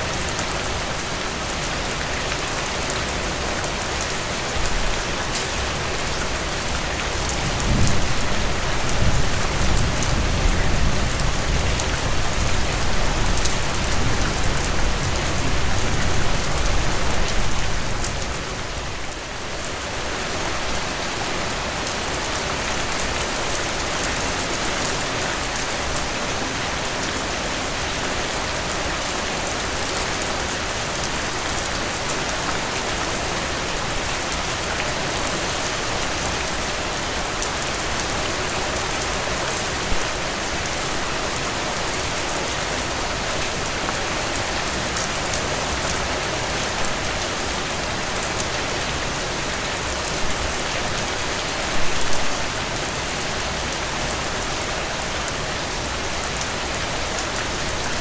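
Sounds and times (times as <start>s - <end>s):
steady rainfall: 0.0s - 58.0s.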